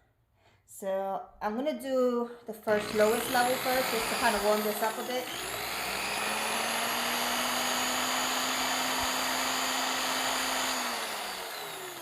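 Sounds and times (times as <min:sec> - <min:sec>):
electric polisher whining: 0:02.8 - 0:12.0.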